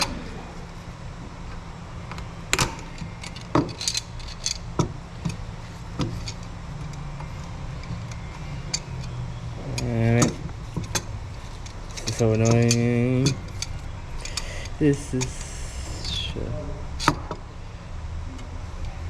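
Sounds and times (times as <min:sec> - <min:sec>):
steady low hum: 0:00.0 - 0:19.0
hand tools clinking on engine parts: 0:11.9 - 0:14.5.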